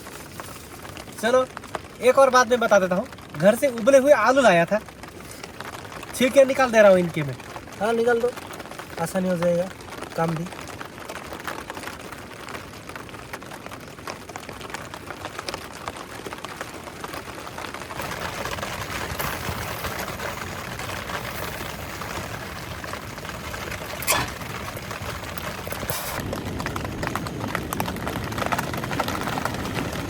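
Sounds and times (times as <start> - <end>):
rain pattering: 0.0 - 30.0.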